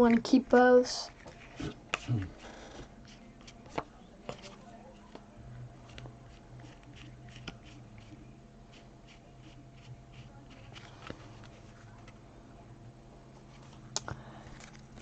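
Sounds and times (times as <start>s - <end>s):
cards and wrappers rustling: 10.1s - 12.2s, 13.5s - 15.0s.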